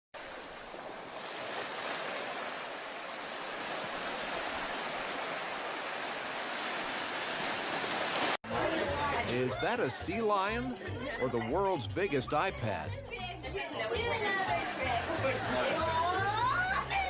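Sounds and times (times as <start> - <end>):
rushing water: 0.2 - 8.4.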